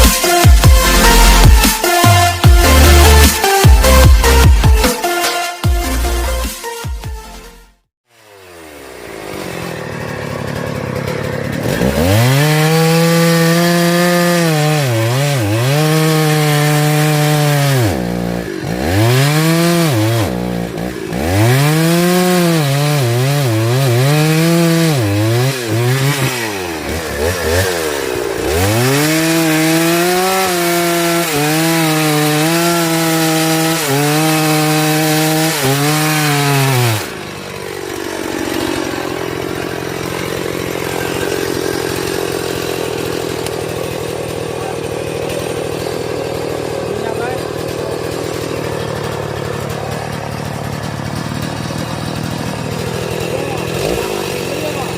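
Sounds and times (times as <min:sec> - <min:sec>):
chainsaw cutting tree trunk: 0:00.0 - 0:06.6, 0:08.0 - 0:54.9.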